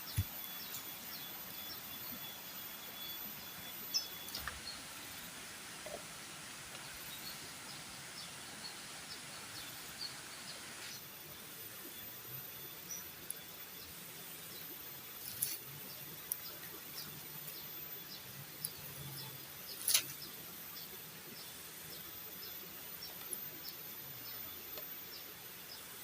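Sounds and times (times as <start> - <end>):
high insect whine: 0.0 - 5.7
steady hiss: 0.0 - 26.0.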